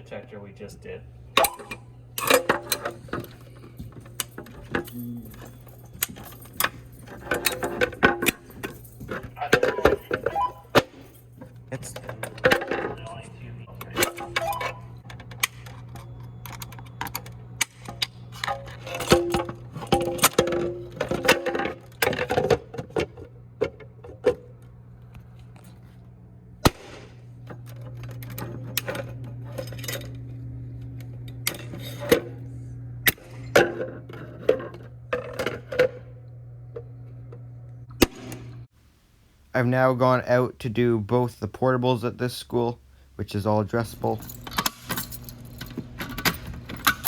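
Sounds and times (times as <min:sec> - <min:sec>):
steady low hum: 0:00.0 - 0:47.0.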